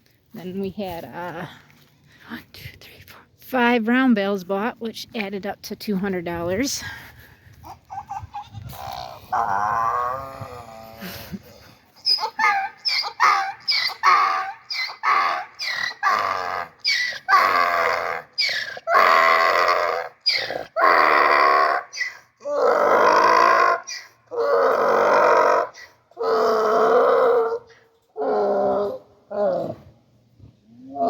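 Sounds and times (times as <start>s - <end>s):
donkey braying: 7.6s - 29.9s.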